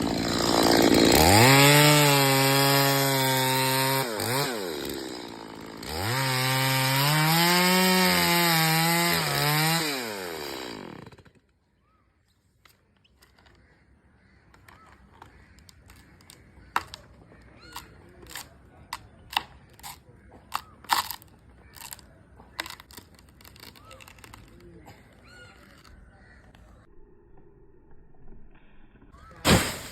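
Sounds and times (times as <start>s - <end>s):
chainsaw engine revving: 0.0s - 11.4s
faint cracks and knocks: 14.5s - 24.8s.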